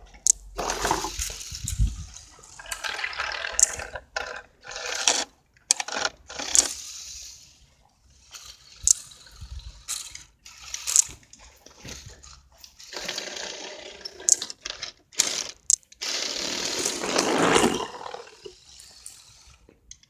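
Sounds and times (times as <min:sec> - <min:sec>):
toy tracked vehicle clattering: 0:00.0 - 0:20.0
sharp clicks: 0:15.2 - 0:16.2.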